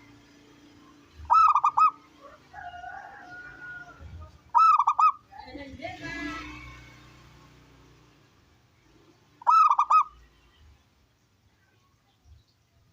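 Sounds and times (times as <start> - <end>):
dove cooing: 1.2 - 5.2, 9.4 - 10.2.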